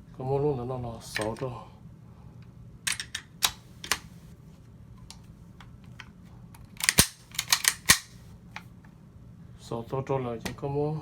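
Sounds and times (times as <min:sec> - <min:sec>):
rifle parts clicking and clacking: 0:06.6 - 0:08.2.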